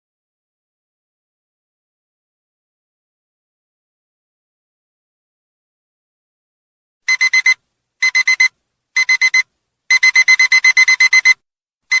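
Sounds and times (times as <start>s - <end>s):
alarm clock beeping: 7.1s - 12.0s.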